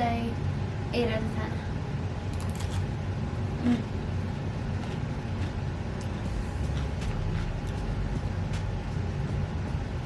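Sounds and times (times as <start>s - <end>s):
low background rumble: 0.0s - 10.0s
person humming: 3.6s - 3.9s.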